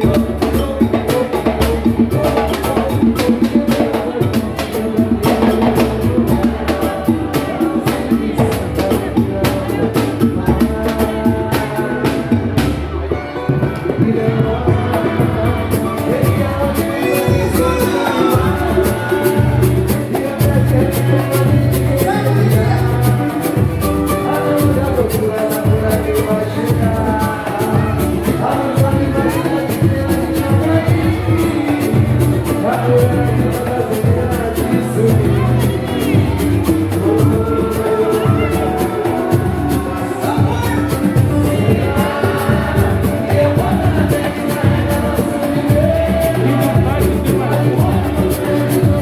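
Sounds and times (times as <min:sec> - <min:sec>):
deep drum beat: 0:00.0 - 0:49.0
fast percussion: 0:00.0 - 0:49.0
voices singing: 0:00.0 - 0:49.0.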